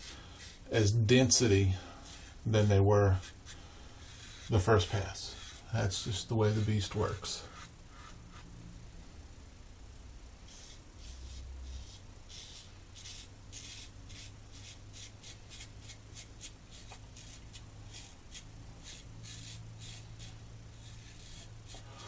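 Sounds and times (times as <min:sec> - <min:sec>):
razor scraping stubble: 0:10.5 - 0:22.0.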